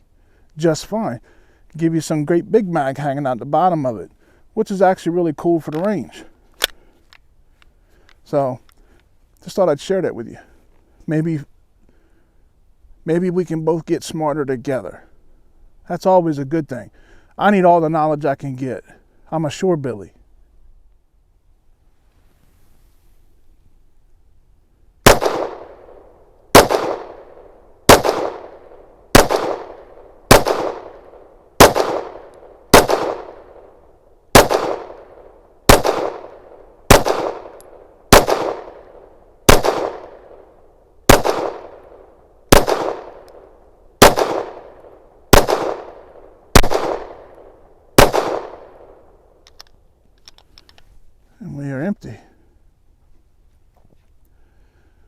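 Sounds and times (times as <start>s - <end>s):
pistol shots: 25.0s - 49.2s.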